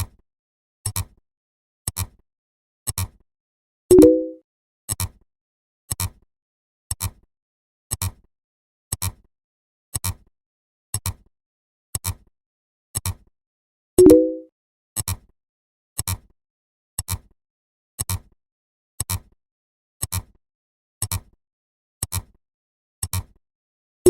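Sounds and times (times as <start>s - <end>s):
short tone: 3.9s - 4.4s, 14.0s - 14.5s.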